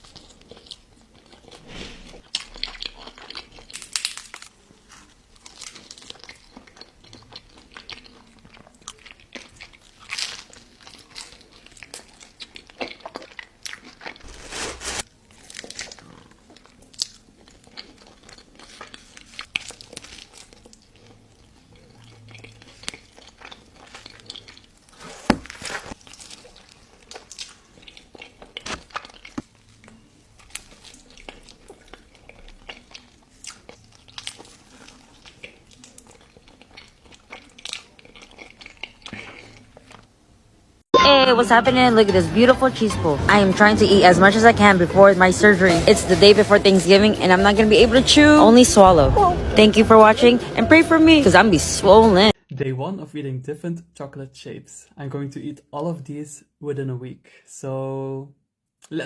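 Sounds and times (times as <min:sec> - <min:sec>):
person chewing crunchy food: 0:00.0 - 0:40.1.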